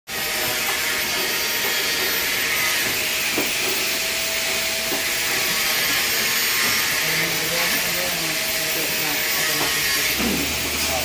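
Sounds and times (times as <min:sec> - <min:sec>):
welding arc hissing: 0:00.1 - 0:11.0.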